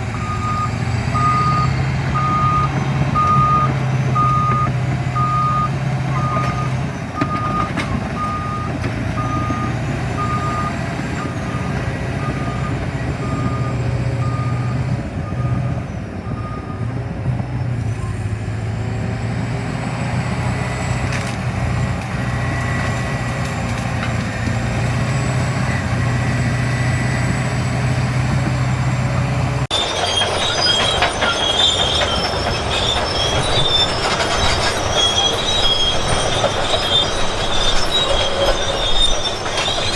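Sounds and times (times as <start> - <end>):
heavy machine engine running: 0.0 - 39.9
reversing alarm beeping: 0.1 - 16.9
high metallic squealing: 29.7 - 39.9
metallic clanking: 29.7 - 39.9.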